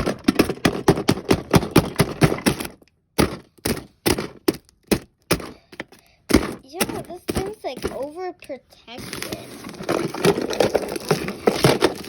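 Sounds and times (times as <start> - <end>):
taped packaging tearing open: 9.0 - 12.0.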